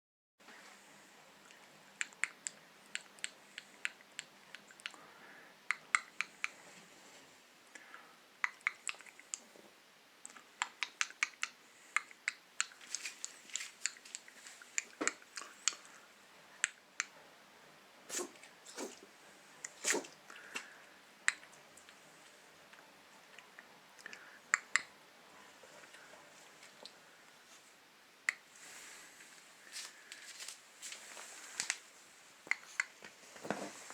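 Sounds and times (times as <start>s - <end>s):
dog sneezing: 18.1s - 19.0s, 19.8s - 20.2s.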